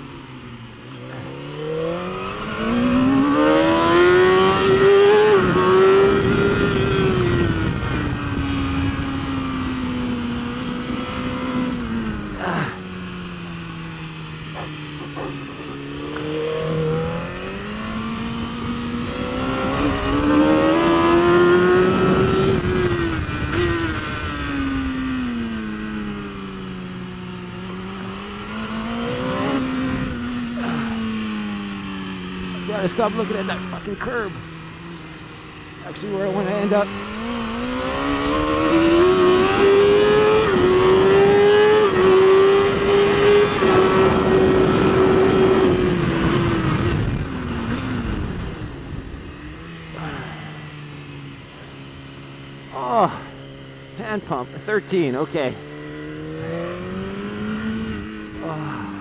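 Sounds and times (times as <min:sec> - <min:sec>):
motorcycle engine revving: 0:00.0 - 0:59.0
wind and road noise: 0:00.0 - 0:59.0.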